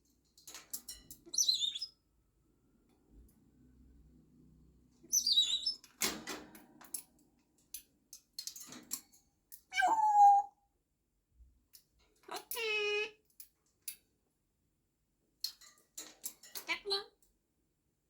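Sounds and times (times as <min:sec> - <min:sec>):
parrot chirping: 0:01.3 - 0:02.0, 0:05.1 - 0:05.8, 0:09.7 - 0:10.5.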